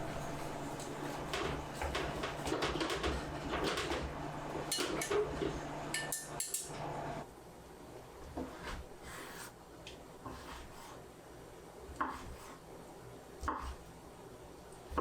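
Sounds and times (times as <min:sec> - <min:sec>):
steady low hum: 0:00.0 - 0:15.0
dishes and utensils clinking: 0:04.6 - 0:06.8.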